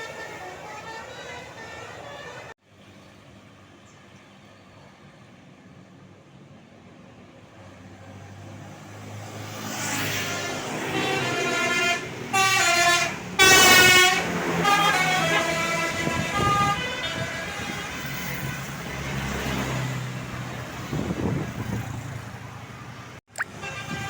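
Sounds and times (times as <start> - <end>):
bus multi-tone horn melody: 0.0 - 2.6, 10.2 - 18.8, 23.5 - 24.0.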